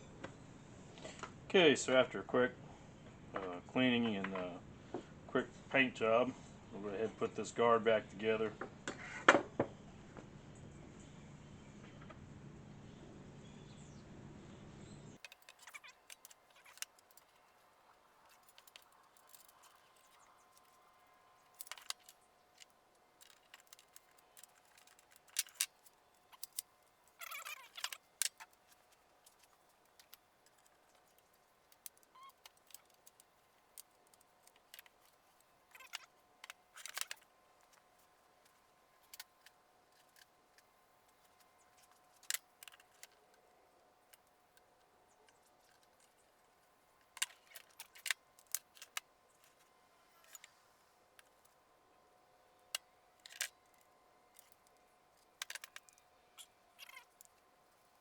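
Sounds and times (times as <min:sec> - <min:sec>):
metallic clicks of small parts: 0:15.2 - 0:43.2, 0:47.0 - 0:50.6, 0:52.7 - 0:57.4.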